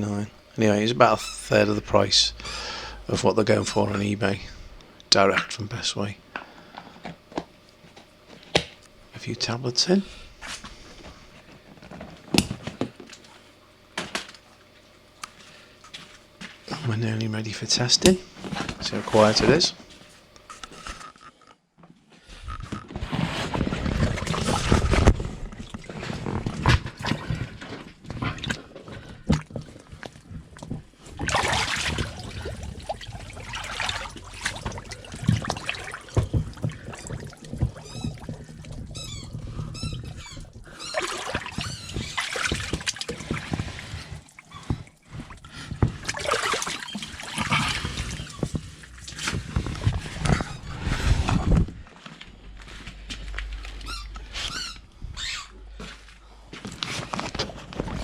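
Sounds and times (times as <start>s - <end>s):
pump humming: 0.0s - 20.9s, 23.5s - 58.0s
water churning and splashing: 24.0s - 50.9s.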